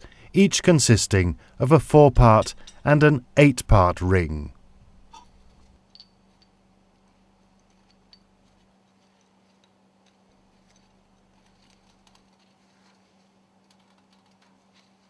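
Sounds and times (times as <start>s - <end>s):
faint steady hum: 0.0s - 15.0s.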